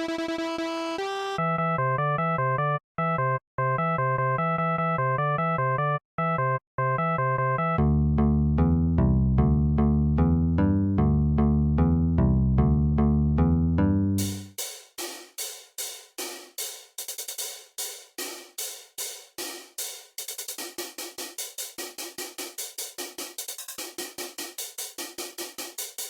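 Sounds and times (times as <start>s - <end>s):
hi-hat-like percussion ticks: 14.2s - 26.0s.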